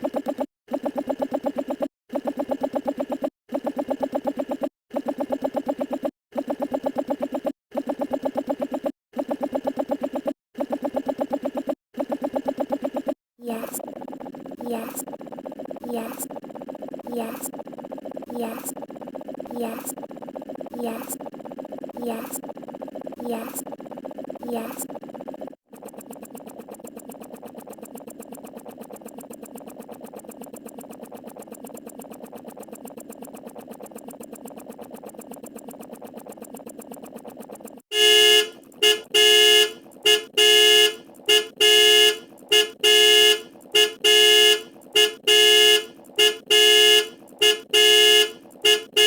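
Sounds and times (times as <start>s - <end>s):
rapid ticking buzz: 25.2s - 49.0s
horn-like alarm blasts: 37.9s - 49.0s.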